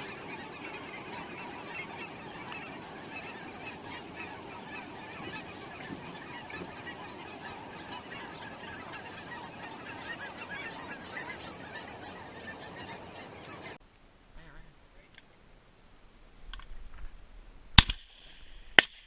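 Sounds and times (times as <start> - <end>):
flock of geese honking: 0.0 - 13.8.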